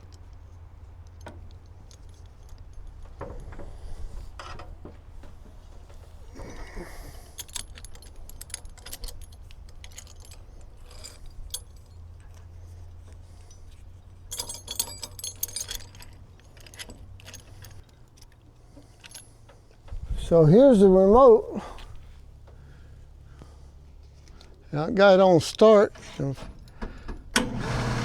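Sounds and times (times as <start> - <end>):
small metal parts clinking: 0.0 - 23.4, 24.0 - 27.1.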